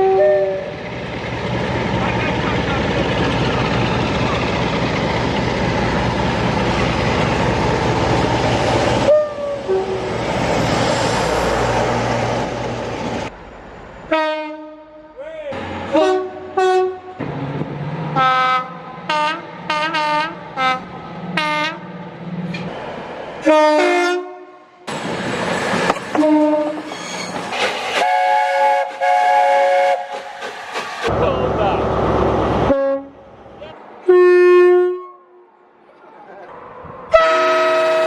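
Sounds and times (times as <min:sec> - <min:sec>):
train horn blasts: 0:00.0 - 0:00.8, 0:09.1 - 0:10.2, 0:14.1 - 0:15.1, 0:15.9 - 0:17.2, 0:18.2 - 0:20.8, 0:21.4 - 0:21.9, 0:23.4 - 0:24.6, 0:26.2 - 0:26.9, 0:28.0 - 0:30.2, 0:32.7 - 0:33.2, 0:34.0 - 0:35.4, 0:37.1 - 0:38.0
train running on track: 0:00.0 - 0:35.7, 0:36.5 - 0:38.0.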